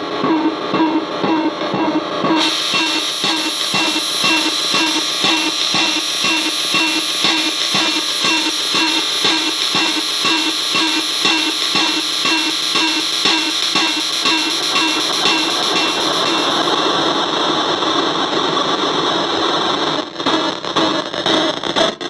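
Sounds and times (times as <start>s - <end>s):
glitchy electronic drum loop: 0.2s - 17.5s.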